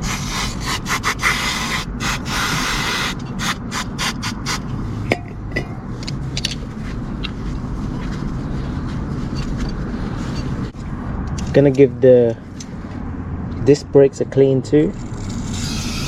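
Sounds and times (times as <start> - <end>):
scrubbing brake caliper: 0.0 - 6.6, 14.9 - 16.0.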